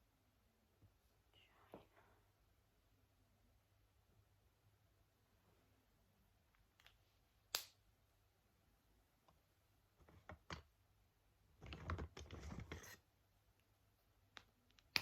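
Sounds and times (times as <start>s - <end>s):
pen scratching: 11.9s - 13.0s.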